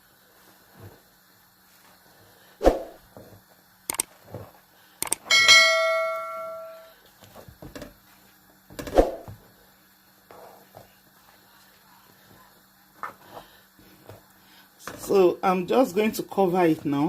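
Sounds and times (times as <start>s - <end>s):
spoon knocking on pot: 5.3s - 6.8s.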